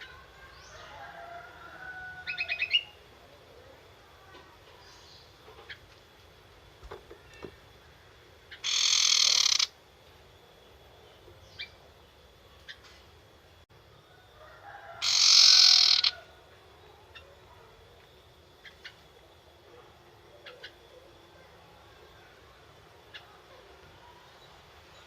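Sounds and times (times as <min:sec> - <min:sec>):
bird harsh chattering call: 0:08.5 - 0:09.8, 0:15.0 - 0:16.2.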